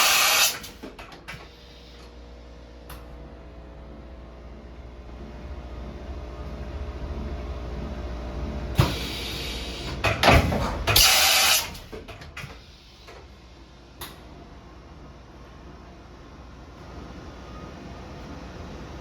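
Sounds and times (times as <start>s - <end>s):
loud rushing air hiss: 0.0s - 0.6s, 8.8s - 9.9s, 11.0s - 11.8s
machining center hum and rumble: 0.0s - 19.0s.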